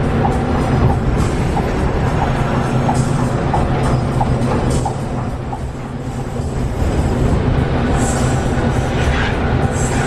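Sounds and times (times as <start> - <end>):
music with steady beat: 0.0 - 5.9
bus rumbling: 0.0 - 10.0.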